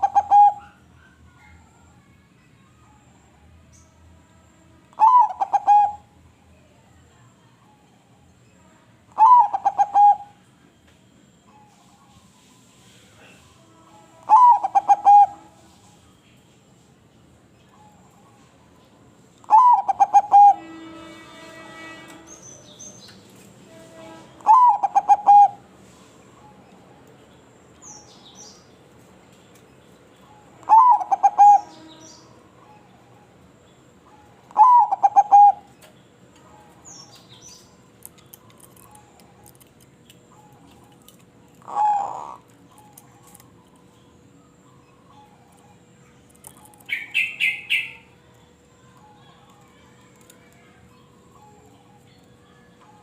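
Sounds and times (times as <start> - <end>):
dove cooing: 0.0 - 0.7, 5.0 - 6.0, 9.2 - 10.4, 14.3 - 15.4, 19.5 - 20.7, 24.4 - 25.7, 30.6 - 31.8, 34.1 - 35.7, 41.6 - 43.5.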